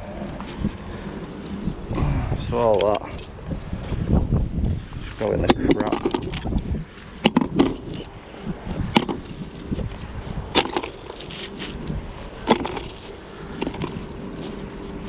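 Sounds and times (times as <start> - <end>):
wind noise: 0.0 - 15.0
scrap metal clinking and knocking: 5.4 - 6.6, 10.5 - 11.8.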